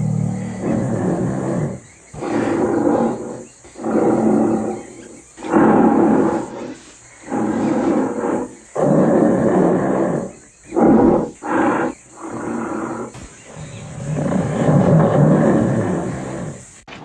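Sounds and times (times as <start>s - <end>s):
giant ape roaring: 7.3s - 16.6s.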